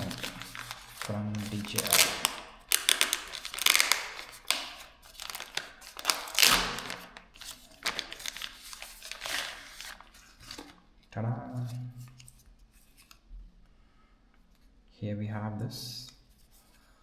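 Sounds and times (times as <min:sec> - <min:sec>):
packaging crinkling and rustling: 0:00.0 - 0:10.9.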